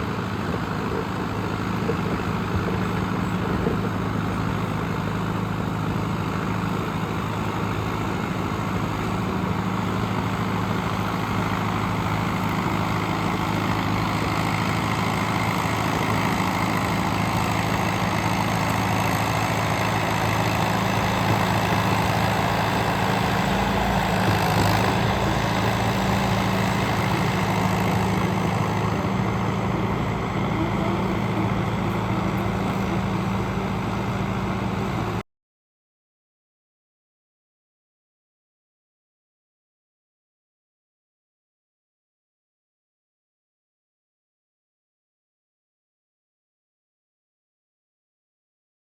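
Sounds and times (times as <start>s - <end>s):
bulldozer diesel engine running: 0.0s - 35.2s.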